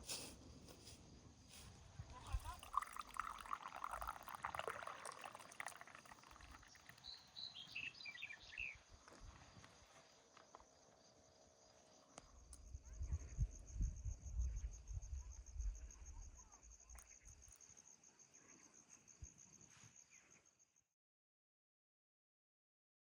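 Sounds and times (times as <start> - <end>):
crickets trilling: 2.2 - 9.2.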